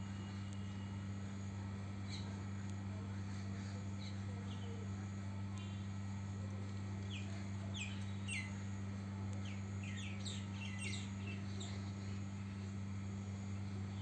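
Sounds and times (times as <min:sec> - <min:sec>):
steady low hum: 0:00.0 - 0:14.0
small bird chirping: 0:07.1 - 0:08.6, 0:09.4 - 0:11.9.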